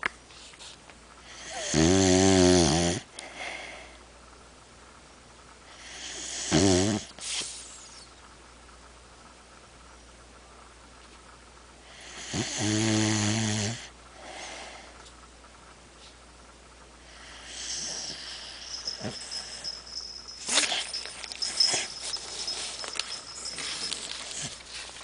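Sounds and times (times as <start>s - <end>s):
dog snoring: 1.2s - 3.1s, 5.7s - 7.2s, 11.8s - 14.5s, 17.0s - 24.5s
thin high whine: 17.0s - 25.0s
rustling: 17.9s - 25.0s.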